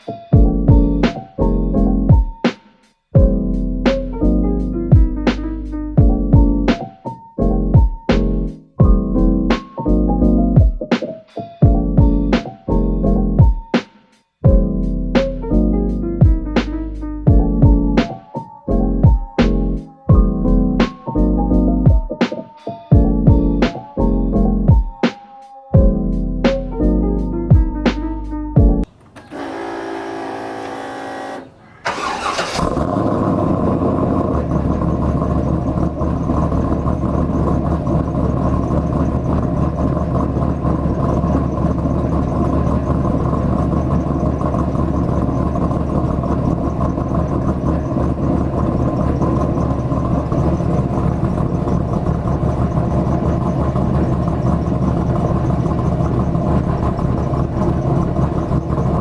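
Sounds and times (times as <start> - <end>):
car engine idling: 28.8 - 59.0
car engine starting: 28.8 - 59.0.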